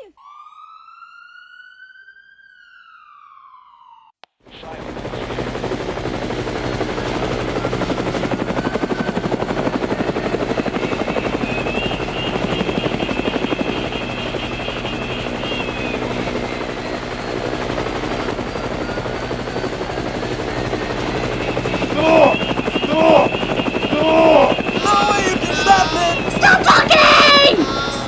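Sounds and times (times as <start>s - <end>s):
toy helicopter rotor chop: 18.1s - 28.0s.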